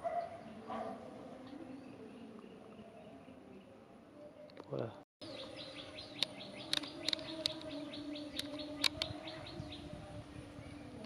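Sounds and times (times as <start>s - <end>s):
bird chirping: 5.2s - 11.0s.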